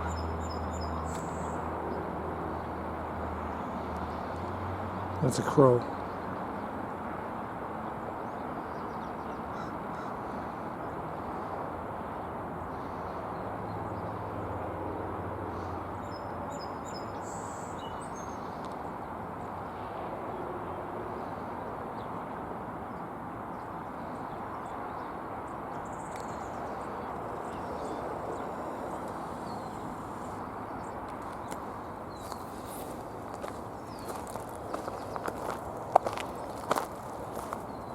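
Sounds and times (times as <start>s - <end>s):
outdoor background noise: 0.0s - 37.9s
small birds chirping: 25.8s - 37.9s.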